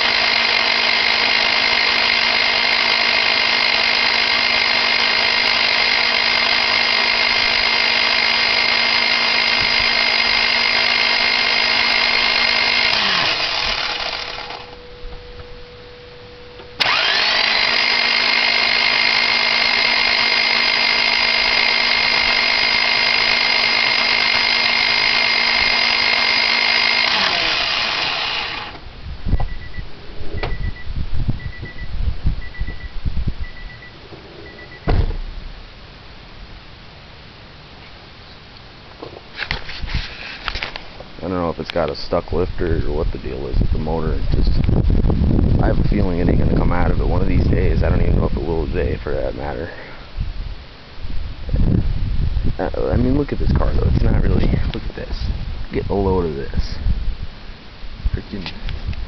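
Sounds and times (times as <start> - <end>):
starter motor cranking: 0.0 - 14.8, 16.6 - 29.7
short repeating beep: 29.4 - 35.0.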